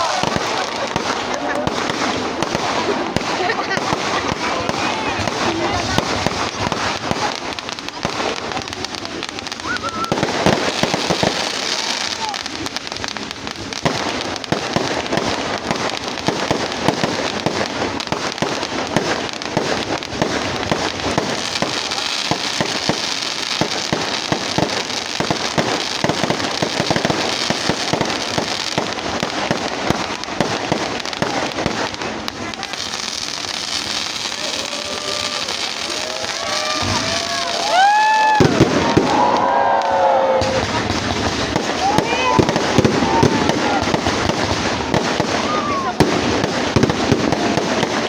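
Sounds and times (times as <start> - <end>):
firework whistles: 0.0 - 12.6, 32.5 - 48.0
firecrackers crackling and popping: 0.0 - 48.0.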